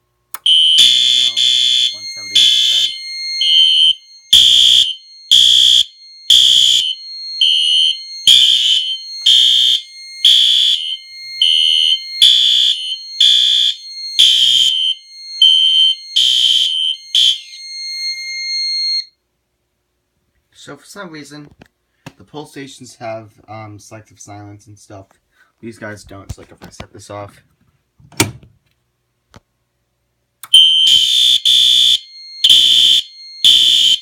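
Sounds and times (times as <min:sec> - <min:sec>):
pulsing fire alarm: 0:00.4 - 0:19.2, 0:30.4 - 0:34.0.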